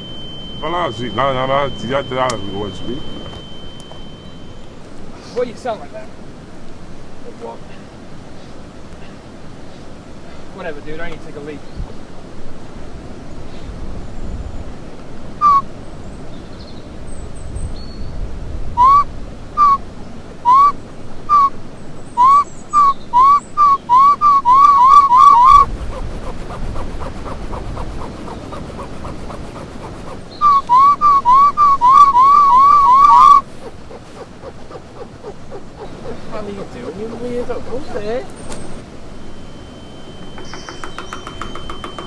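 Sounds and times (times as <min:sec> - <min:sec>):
person whistling bird call: 0:18.8 - 0:19.0, 0:20.5 - 0:21.5, 0:22.1 - 0:38.0.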